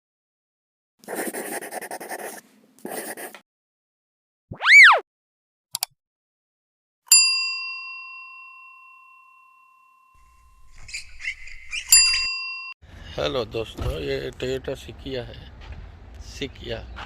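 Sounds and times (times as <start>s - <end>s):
rising and falling whistle: 4.5s - 5.0s
bell ding: 7.1s - 10.4s, 12.0s - 12.8s.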